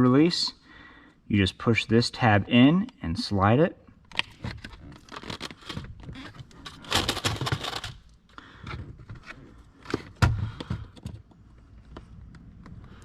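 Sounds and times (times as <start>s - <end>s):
plastic clicks and rattles: 4.1s - 8.1s.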